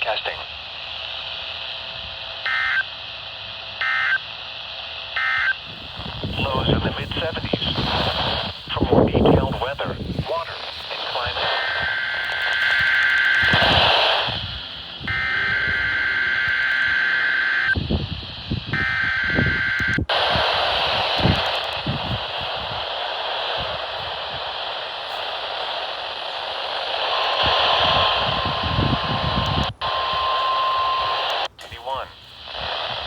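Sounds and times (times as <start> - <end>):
radio static hiss: 0.0 - 33.0
steady warning alarm tone: 0.9 - 33.0
harsh two-tone digital warble: 6.3 - 17.8.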